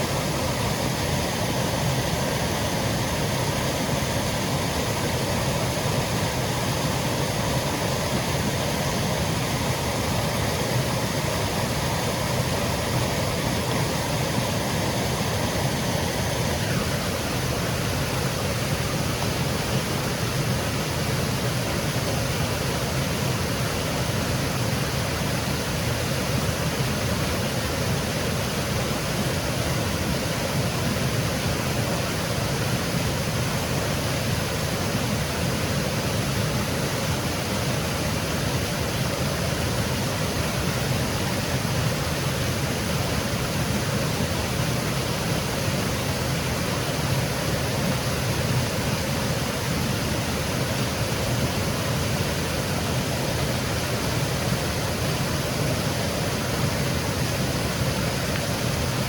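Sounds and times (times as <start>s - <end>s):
faint steady hum: 0.0s - 59.0s
waterfall rushing over rocks: 0.0s - 59.0s.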